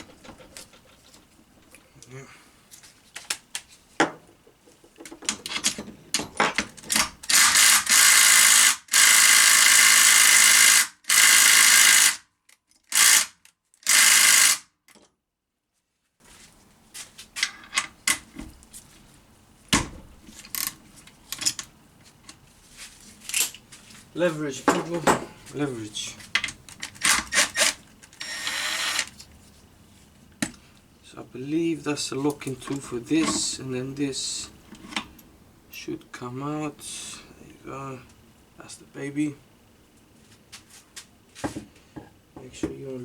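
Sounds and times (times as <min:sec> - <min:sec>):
power tool bursts: 0:07.3 - 0:12.2, 0:12.9 - 0:14.7, 0:27.0 - 0:29.1.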